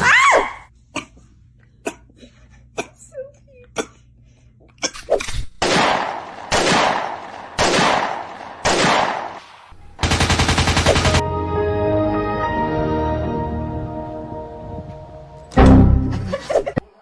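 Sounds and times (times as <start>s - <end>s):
heavy gunshot blasts: 5.6s - 9.4s
machine-gun fire: 5.6s - 9.4s, 10.0s - 11.2s
music with held tones: 11.2s - 16.4s.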